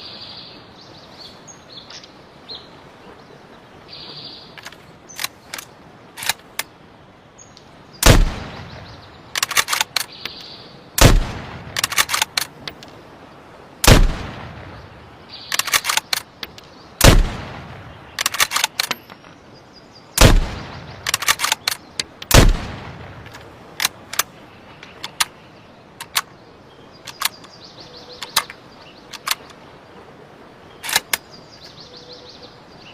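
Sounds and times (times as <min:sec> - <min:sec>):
rifle bolt clicks: 0:04.6 - 0:06.7, 0:09.4 - 0:10.2, 0:11.0 - 0:13.0, 0:15.5 - 0:17.2, 0:18.2 - 0:19.2, 0:21.0 - 0:22.6, 0:24.9 - 0:25.4, 0:26.0 - 0:26.3, 0:27.0 - 0:27.5, 0:28.2 - 0:29.6, 0:30.8 - 0:31.2
rifle shots echoing: 0:08.0 - 0:10.0, 0:11.0 - 0:12.4, 0:13.8 - 0:14.7, 0:17.0 - 0:18.7, 0:20.2 - 0:21.6, 0:22.3 - 0:23.2.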